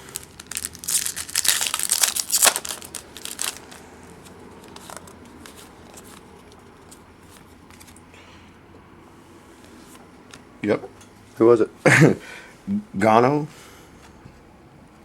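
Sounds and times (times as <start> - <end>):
wrapper crinkling and tearing: 0.0 - 3.8
cards clicking and rustling: 0.0 - 8.0.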